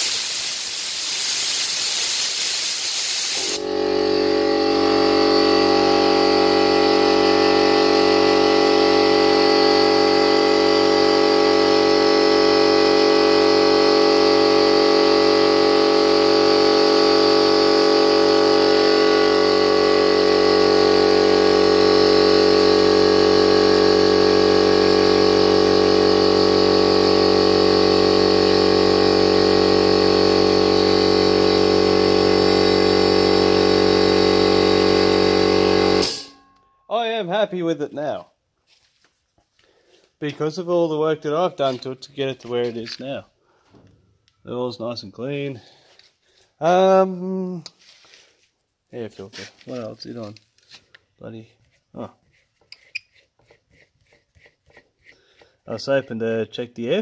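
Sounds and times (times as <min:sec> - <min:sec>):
compressed air hissing: 0:00.0 - 0:06.5
air compressor motor running: 0:00.0 - 0:36.4, 0:45.4 - 0:48.3, 0:54.7 - 0:57.0.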